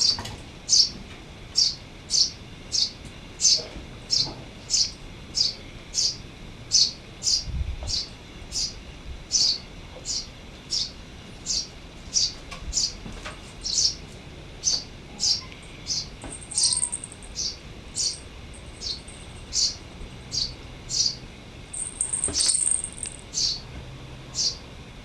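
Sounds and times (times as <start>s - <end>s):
bird thin high trill: 16.4s - 20.5s.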